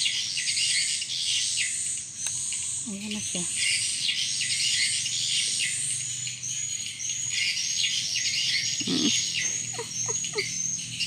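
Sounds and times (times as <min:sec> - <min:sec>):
birds chirping: 0:08.3 - 0:11.0.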